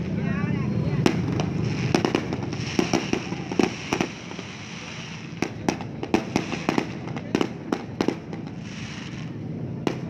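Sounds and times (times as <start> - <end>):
steady background noise: 0.0 - 10.0
fireworks bangs and pops: 0.9 - 10.0.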